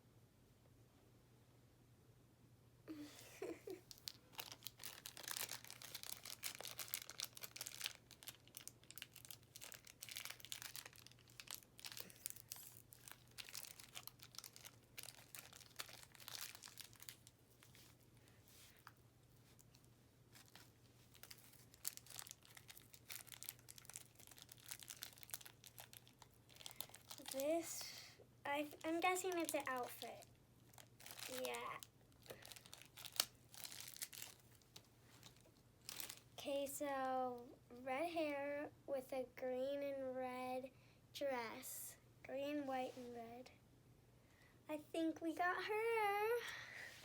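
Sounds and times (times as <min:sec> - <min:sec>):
packaging bag crinkling and tearing: 0:03.4 - 0:17.9, 0:20.3 - 0:28.0, 0:28.7 - 0:36.4.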